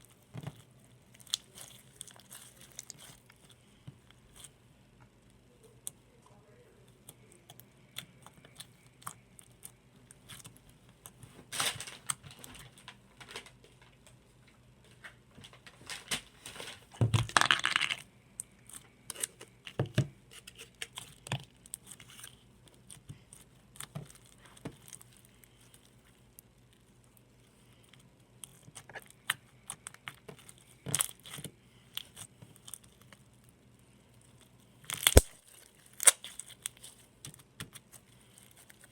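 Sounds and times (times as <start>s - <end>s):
sticky slime clicks and crackles: 34.3s - 38.9s.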